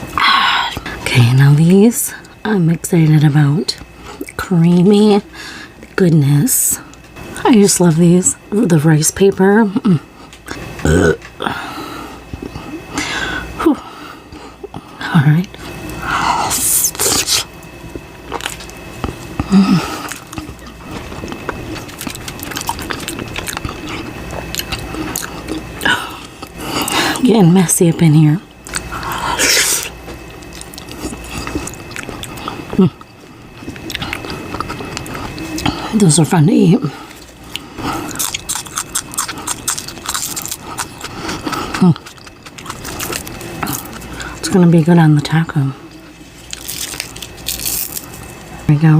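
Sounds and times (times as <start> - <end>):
falling hum from person: 0.0 - 48.9
wet chewing mouth sounds: 16.9 - 27.2, 28.6 - 36.0, 37.1 - 44.5.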